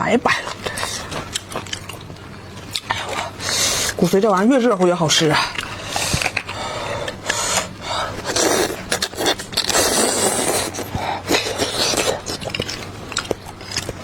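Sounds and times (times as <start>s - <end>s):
wet sucking of bone marrow: 5.5s - 12.9s.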